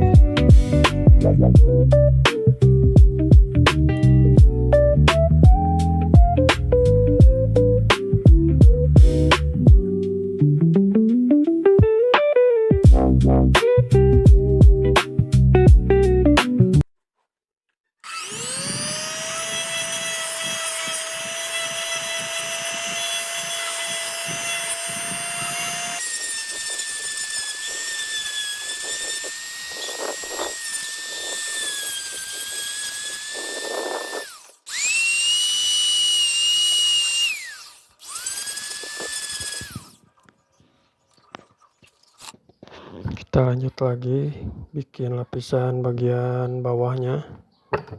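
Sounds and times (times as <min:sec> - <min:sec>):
power tool motor whining: 0:18.0 - 0:40.3.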